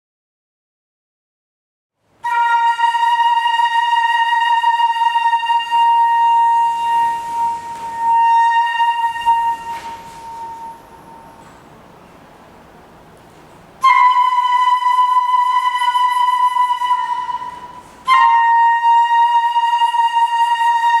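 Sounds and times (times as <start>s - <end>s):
flute long high note: 2.2s - 11.5s, 13.8s - 21.0s.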